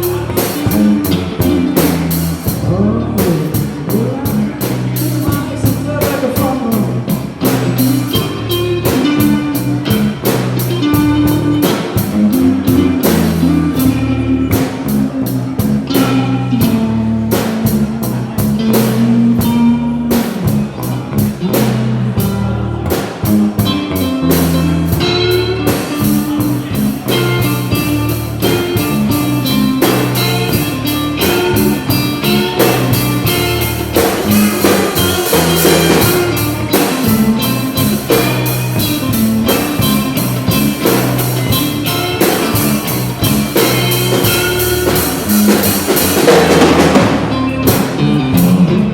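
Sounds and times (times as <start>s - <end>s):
drum kit beat: 0.0s - 48.9s
electric guitar: 0.0s - 48.9s
held low notes: 0.0s - 48.9s.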